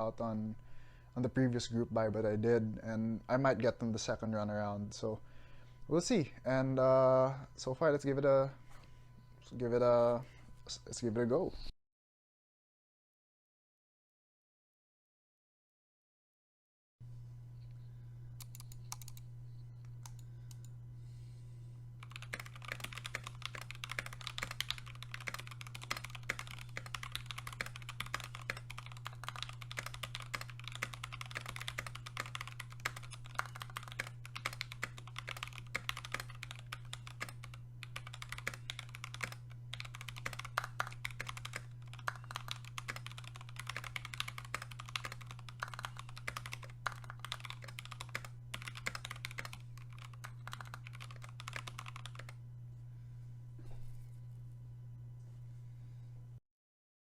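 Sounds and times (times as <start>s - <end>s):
typing on mechanical keyboard: 22.0s - 52.4s.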